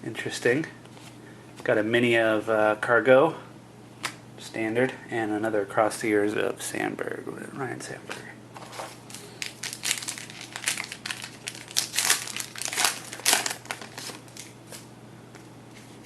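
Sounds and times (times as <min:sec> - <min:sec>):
wrapper crinkling being torn open: 0:08.6 - 0:14.8.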